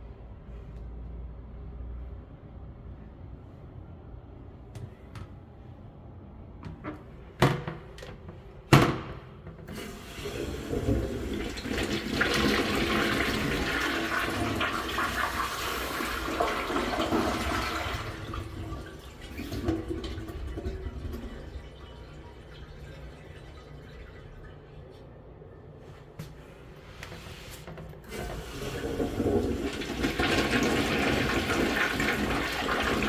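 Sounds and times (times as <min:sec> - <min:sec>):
toilet flush water rushing: 0:09.7 - 0:25.0, 0:28.0 - 0:33.0.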